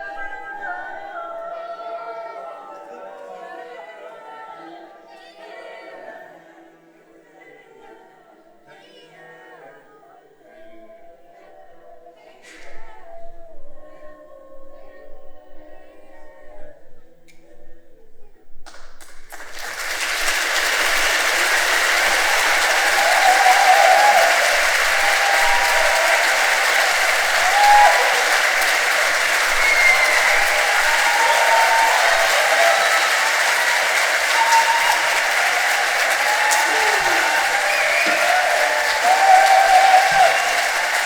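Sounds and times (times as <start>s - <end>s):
audience applause: 19.0s - 41.0s
voices calling out: 19.4s - 41.0s.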